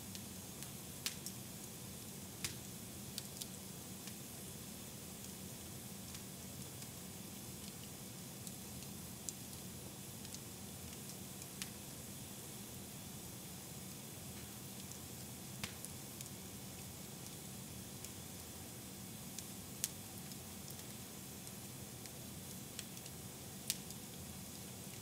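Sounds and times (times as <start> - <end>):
faint fire crackles: 0.0 - 25.0.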